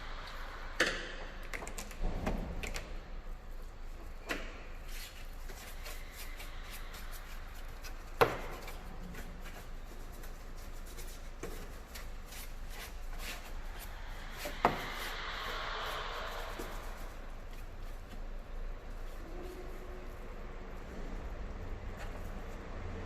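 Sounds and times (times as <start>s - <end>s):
rubbing and scraping by hand: 4.0s - 21.1s.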